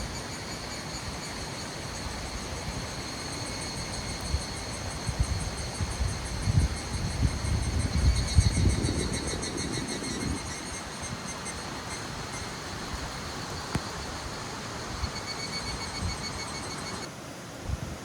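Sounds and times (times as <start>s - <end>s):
insects trilling: 0.0s - 17.1s
wind buffeting microphone: 4.0s - 17.1s.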